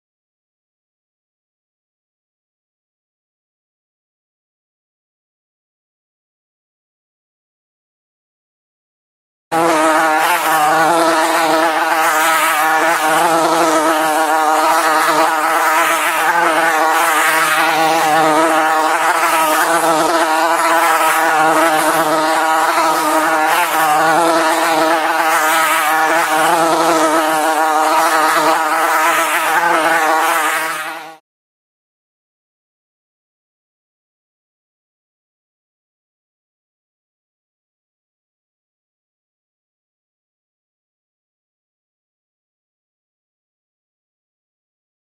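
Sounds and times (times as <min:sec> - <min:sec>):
loud buzzing drone: 0:09.5 - 0:31.2.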